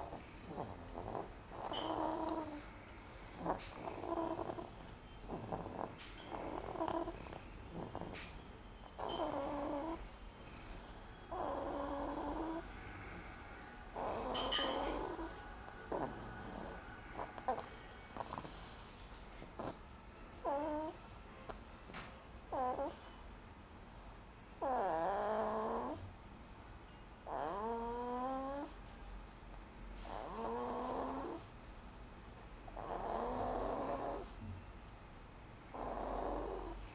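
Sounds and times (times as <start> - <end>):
rough snoring breaths: 0.0 - 8.4, 9.0 - 19.8, 22.5 - 36.9.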